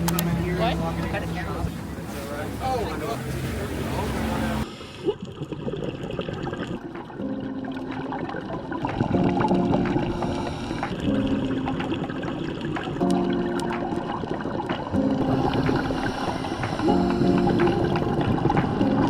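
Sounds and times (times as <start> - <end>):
water sloshing and trickling: 0.0 - 19.0
soft background music: 6.8 - 19.0.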